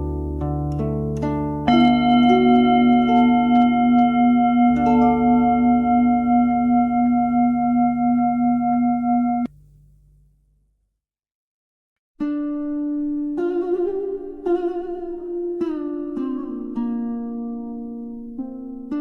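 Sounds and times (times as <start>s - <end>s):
soft plucked notes: 0.0s - 9.8s, 12.2s - 19.0s
bell-like ringing tone: 1.7s - 9.5s
low drone: 1.7s - 9.5s.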